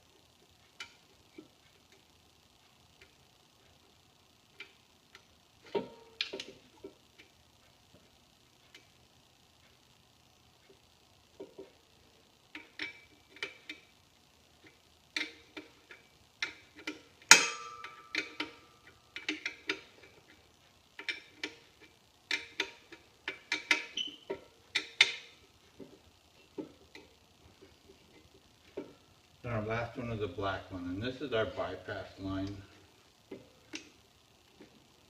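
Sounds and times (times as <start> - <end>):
wrench clicking on metal fittings: 15.1 - 20.3, 21.0 - 25.3.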